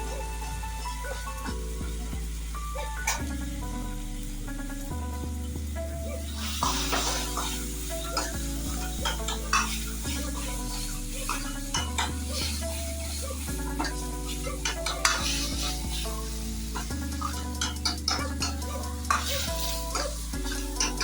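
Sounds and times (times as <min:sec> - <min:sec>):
chicken sizzling in a pan: 0:00.0 - 0:21.0
metal spatula scraping pan: 0:06.3 - 0:21.0.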